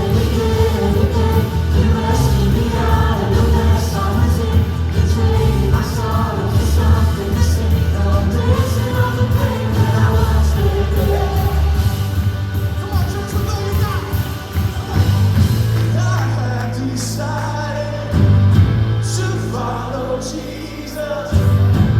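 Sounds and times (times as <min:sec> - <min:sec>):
person singing: 0:00.0 - 0:12.2
rock band playing: 0:00.0 - 0:16.6, 0:18.1 - 0:19.4
drums: 0:00.0 - 0:19.8, 0:20.9 - 0:21.9
bass: 0:00.0 - 0:21.9.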